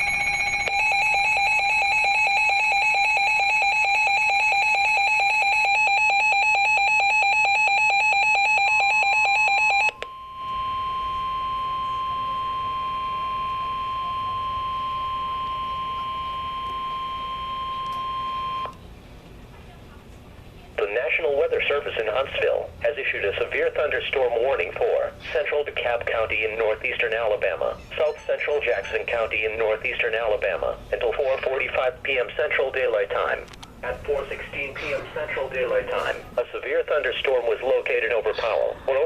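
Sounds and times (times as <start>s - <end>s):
pulsing electronic alarm: 0.0s - 18.8s
steady single-pitched alert tone: 28.0s - 29.2s.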